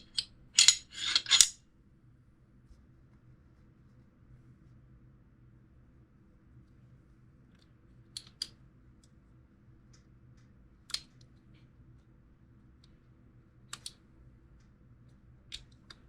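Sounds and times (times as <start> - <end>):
pistol parts clicking: 0.0 - 1.6.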